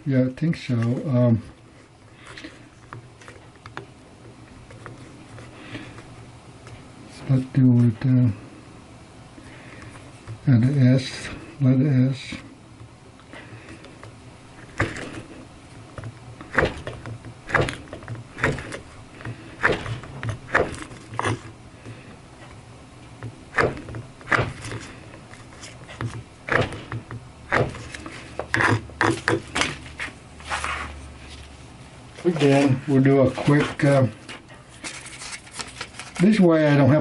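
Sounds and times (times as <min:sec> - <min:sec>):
knife cutting power cord crunch: 0:16.4 - 0:21.5, 0:23.5 - 0:25.0, 0:25.9 - 0:29.8.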